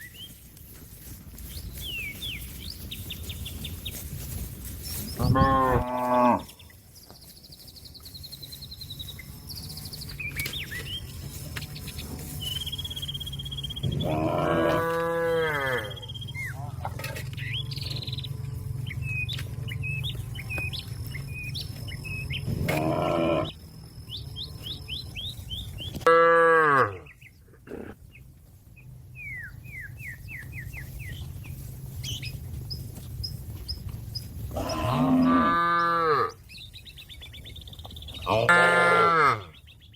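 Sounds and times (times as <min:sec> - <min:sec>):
birds chirping: 0:00.0 - 0:39.9
cow mooing: 0:05.2 - 0:06.6, 0:13.8 - 0:16.1, 0:22.5 - 0:23.5, 0:26.0 - 0:27.1, 0:34.5 - 0:36.4, 0:38.3 - 0:39.5
steady low hum: 0:15.8 - 0:25.9.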